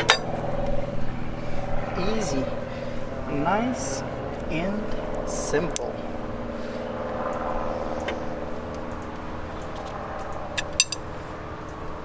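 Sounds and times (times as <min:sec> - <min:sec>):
steady mechanical hum: 0:00.0 - 0:12.0
light metallic clicks: 0:10.6 - 0:11.0.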